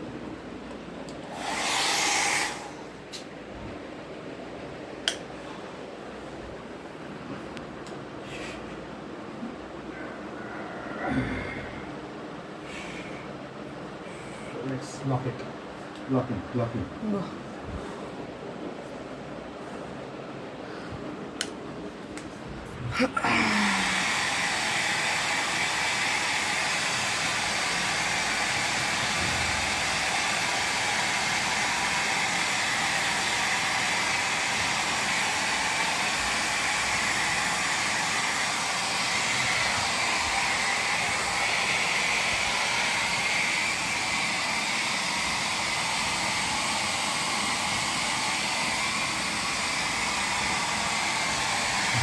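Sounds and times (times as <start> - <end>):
hair dryer running: 0.7 - 3.3, 23.0 - 52.0.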